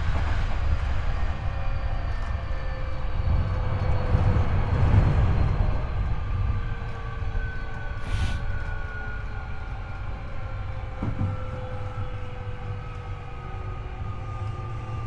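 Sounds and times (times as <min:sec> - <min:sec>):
train wheels rumbling on rail: 0:00.0 - 0:15.0
train motor whine: 0:10.8 - 0:15.0.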